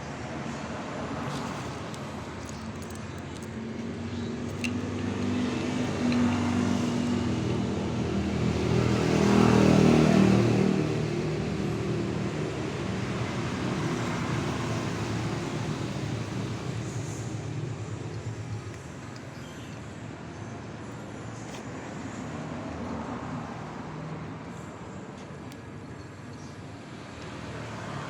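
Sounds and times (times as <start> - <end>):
steady traffic noise: 0.0 - 28.0
vehicle engine passing by: 4.4 - 18.0.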